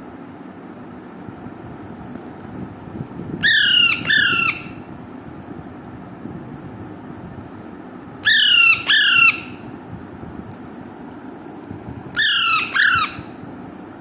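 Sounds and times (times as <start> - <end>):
parakeet squawking: 3.4 - 4.8, 8.2 - 9.6, 12.1 - 13.3.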